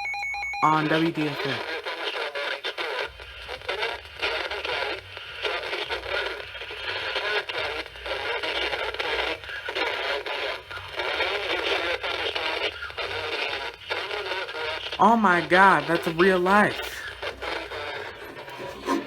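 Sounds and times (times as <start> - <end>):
voice through radio speaker: 0.6 - 2.2, 15.0 - 19.0
radio static: 0.6 - 19.0.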